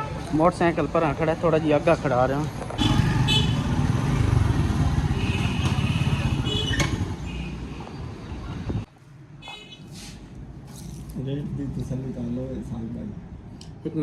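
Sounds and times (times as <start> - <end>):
busy street traffic: 0.0 - 14.0
motorcycle engines running: 0.7 - 8.9.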